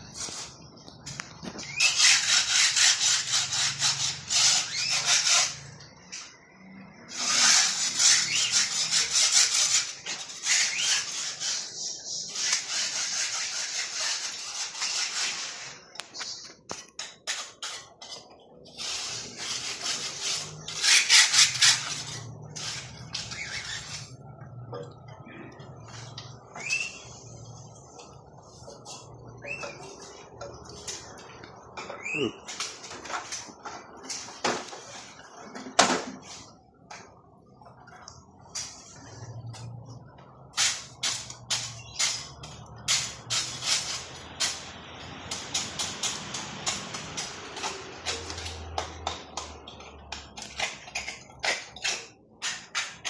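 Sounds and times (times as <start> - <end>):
rasping strokes on wood: 7.1 - 15.7.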